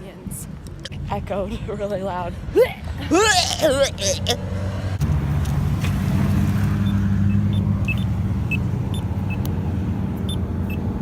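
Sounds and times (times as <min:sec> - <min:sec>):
car cabin driving hum: 0:05.0 - 0:11.0.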